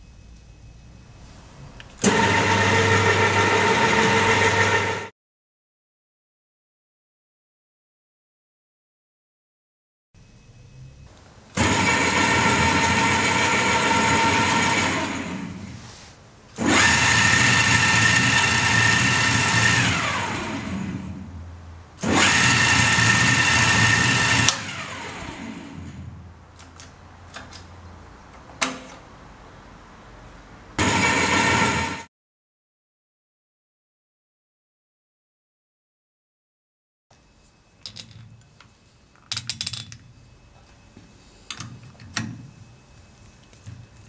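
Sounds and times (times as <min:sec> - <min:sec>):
thread-cutting machine whining: 0:01.8 - 0:05.1, 0:10.8 - 0:15.8, 0:16.6 - 0:21.3, 0:22.0 - 0:27.7, 0:30.8 - 0:32.1.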